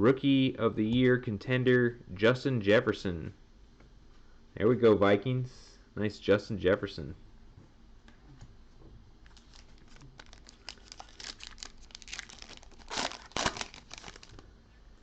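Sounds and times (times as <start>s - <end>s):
wrapper tearing and crinkling: 9.2s - 14.4s.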